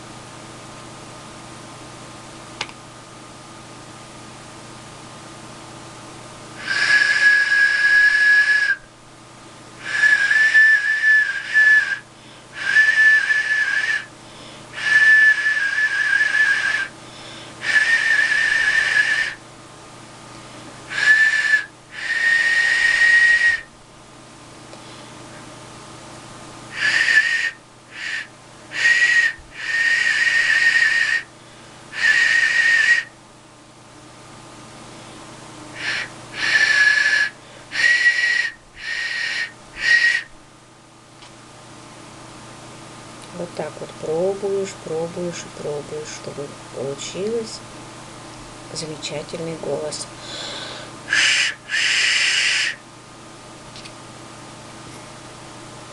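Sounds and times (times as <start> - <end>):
clay whistle blows: 6.6 - 8.9, 9.8 - 14.1, 14.8 - 17.0, 17.6 - 19.4, 20.9 - 23.7, 26.8 - 31.3, 32.0 - 33.2, 35.8 - 40.3, 51.1 - 52.8.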